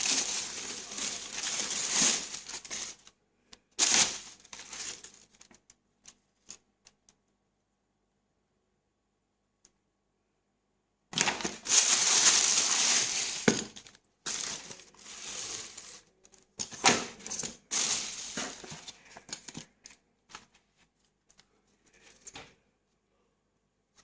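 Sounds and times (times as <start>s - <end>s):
packaging rustling and crinkling: 0.0s - 3.2s, 3.8s - 6.6s, 11.2s - 22.4s.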